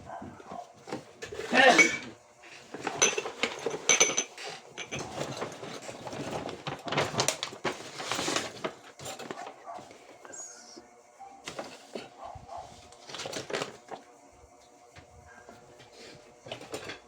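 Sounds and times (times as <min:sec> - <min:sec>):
kitchenware clinking and knocking: 0:01.4 - 0:02.2, 0:02.8 - 0:05.8.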